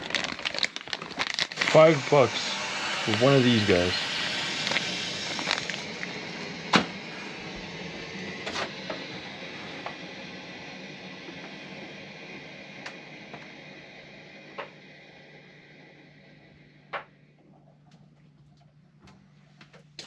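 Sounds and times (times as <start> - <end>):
water hissing through pipes: 1.3 - 16.6.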